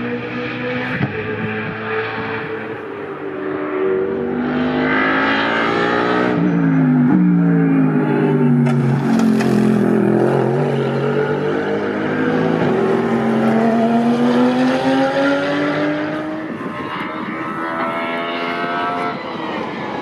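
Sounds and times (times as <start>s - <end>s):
race car engines revving: 0.0s - 20.0s.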